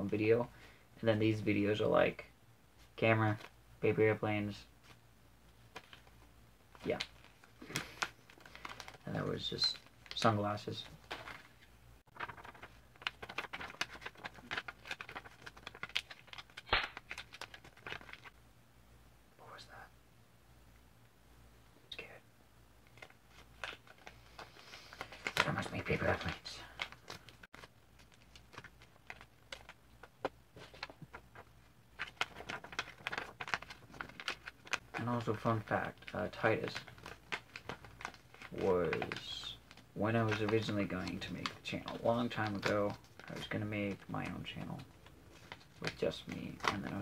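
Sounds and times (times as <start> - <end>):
paper crinkling and creasing: 5.7 - 18.4, 22.8 - 47.0.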